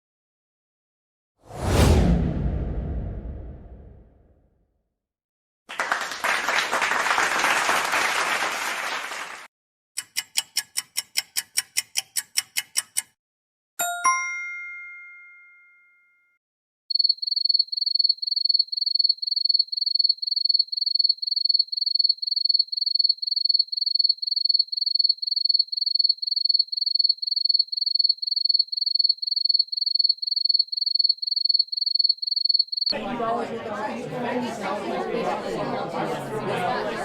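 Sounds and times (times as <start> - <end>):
bell-like ding: 13.8 - 16.3.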